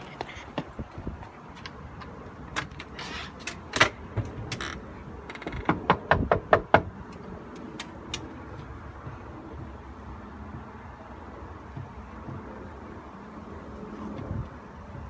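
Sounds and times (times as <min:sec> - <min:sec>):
knocking on door: 0:05.6 - 0:06.9.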